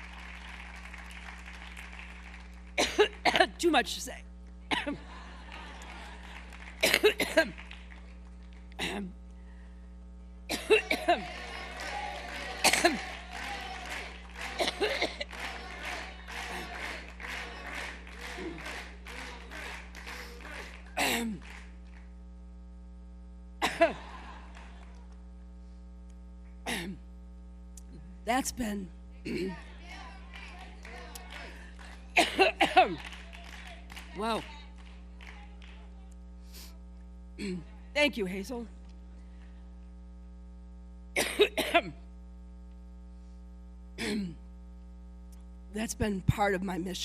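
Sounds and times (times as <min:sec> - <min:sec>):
electrical hum: 0:00.0 - 0:47.0
woman coughing: 0:02.8 - 0:03.8, 0:04.7 - 0:05.1, 0:06.8 - 0:07.6, 0:08.8 - 0:09.2, 0:10.5 - 0:11.3, 0:12.6 - 0:13.2, 0:14.5 - 0:15.3, 0:21.0 - 0:21.4, 0:23.6 - 0:24.0, 0:26.7 - 0:27.0, 0:29.3 - 0:29.7, 0:32.1 - 0:33.2, 0:37.4 - 0:37.8, 0:41.2 - 0:42.0, 0:44.0 - 0:44.5.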